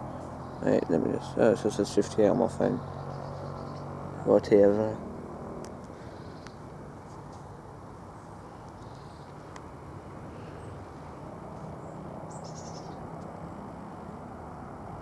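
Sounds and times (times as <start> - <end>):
faint high bird chirps: 11.8 - 13.0.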